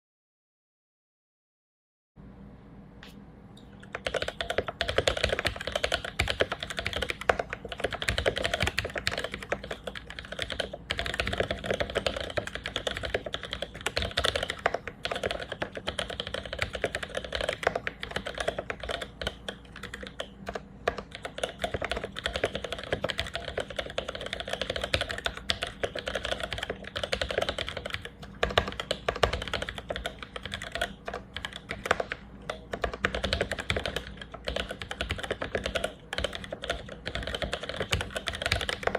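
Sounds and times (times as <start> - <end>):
fast typing on mechanical keyboard: 3.8 - 38.9.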